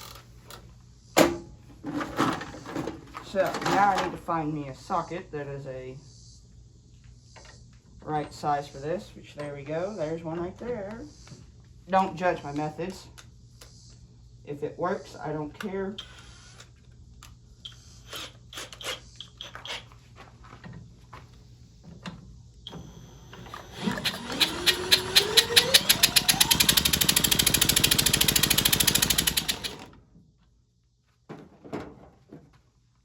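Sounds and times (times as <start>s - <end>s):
power drill whine: 22.6s - 30.0s
engine pulsing as it spins: 22.8s - 29.9s
tools clicking and knocking: 23.5s - 29.9s.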